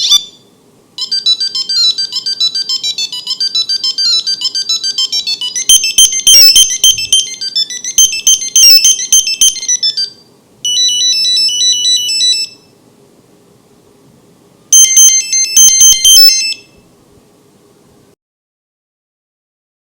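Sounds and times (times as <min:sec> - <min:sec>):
monophonic ringtone beeping melody: 0:00.0 - 0:00.4, 0:01.0 - 0:12.6, 0:14.8 - 0:16.7.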